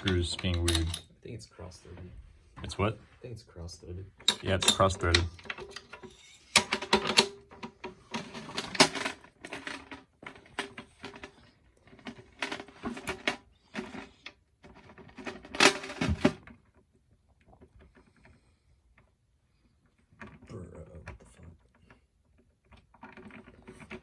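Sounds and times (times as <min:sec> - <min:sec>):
drum hardware clicking and rattling: 0:00.0 - 0:01.1, 0:04.1 - 0:11.3.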